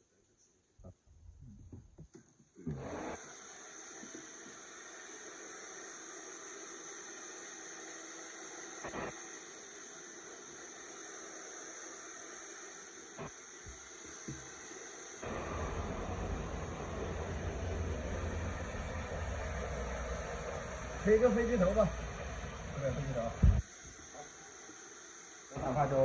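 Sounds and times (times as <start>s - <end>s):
hair dryer blowing: 2.7s - 5.8s, 13.6s - 24.2s
deep airflow rumble: 15.2s - 23.6s.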